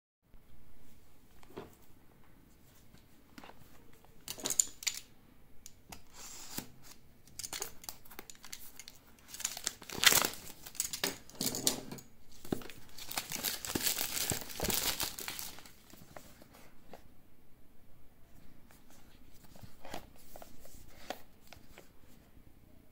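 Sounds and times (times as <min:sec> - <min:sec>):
packaging crinkling and tearing: 0:06.5 - 0:11.2, 0:12.3 - 0:16.0.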